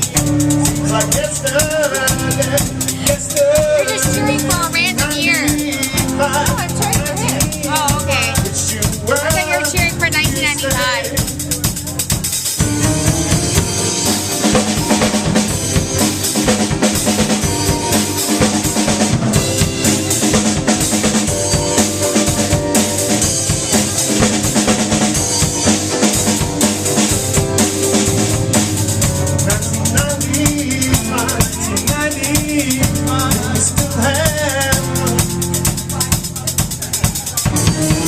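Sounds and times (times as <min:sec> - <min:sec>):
drum kit beat: 0:00.0 - 0:38.0
live band playing instrumental: 0:00.0 - 0:38.0.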